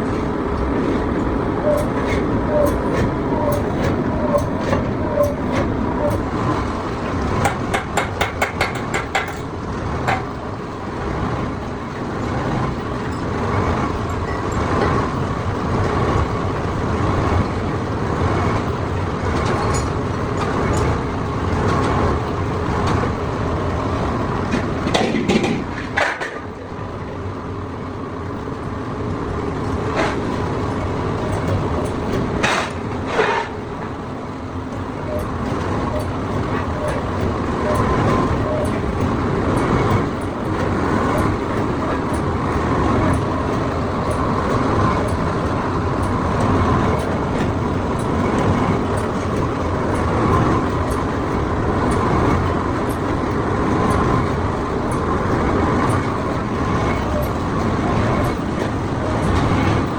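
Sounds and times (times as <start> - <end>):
machinery running: 0.0 - 59.9
metal knocks: 7.4 - 9.5.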